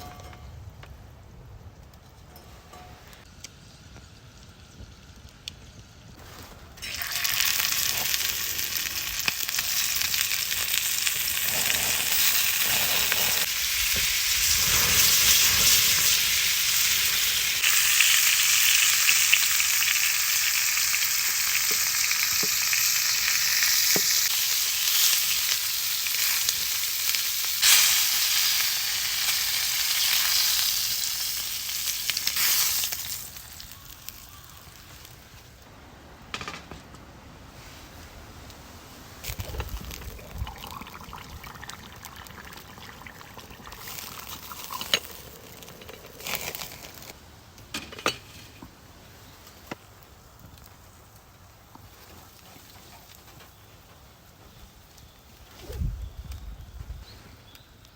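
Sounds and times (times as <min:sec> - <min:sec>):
food sizzling in hot oil: 0:06.8 - 0:35.2, 0:39.2 - 0:47.1.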